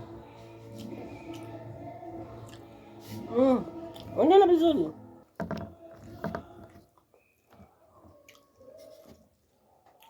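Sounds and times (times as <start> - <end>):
person chewing bread: 0.2 - 1.7, 2.3 - 4.2.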